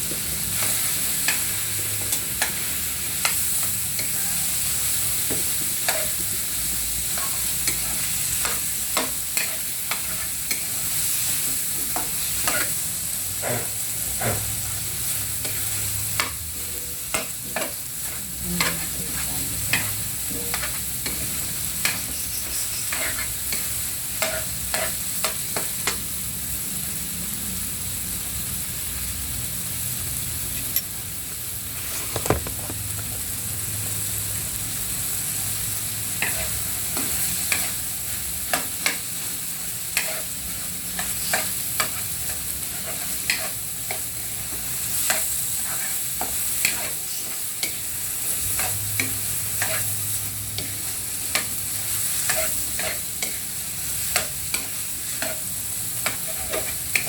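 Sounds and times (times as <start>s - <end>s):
food sizzling in a pan: 0.0s - 57.0s
spatula scraping a pan: 12.2s - 12.8s, 17.1s - 25.4s, 40.0s - 40.4s, 45.0s - 47.8s, 48.5s - 50.0s, 50.6s - 53.5s, 54.1s - 57.0s.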